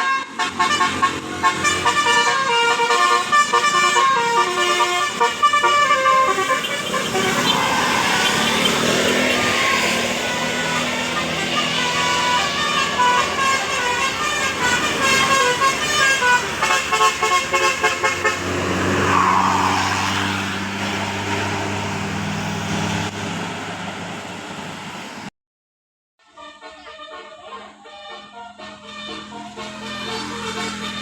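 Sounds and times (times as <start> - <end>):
musical bus air horn: 0.0 - 19.0, 26.2 - 31.0
bus diesel engine running: 0.0 - 25.3, 27.7 - 31.0.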